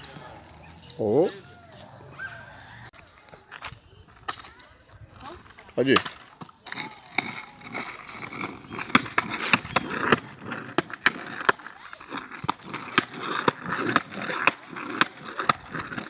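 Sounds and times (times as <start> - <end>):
skateboard wheels rumbling: 5.0 - 16.0
skateboard sharp clacks: 5.9 - 16.0.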